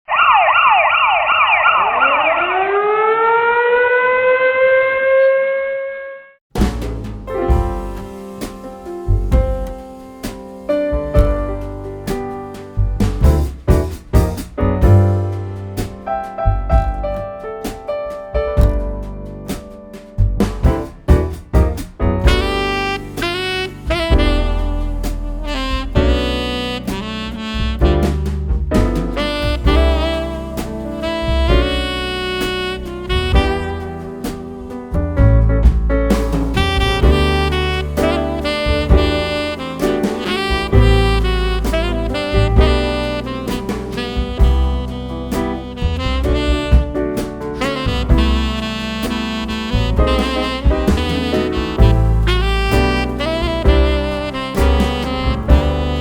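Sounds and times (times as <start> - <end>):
siren warbling and sliding up: 0.1 - 6.4
drum hits: 6.5 - 56.0
sustained bass: 6.6 - 9.9, 10.9 - 17.4, 18.4 - 19.6, 20.2 - 56.0
piano music: 6.6 - 56.0.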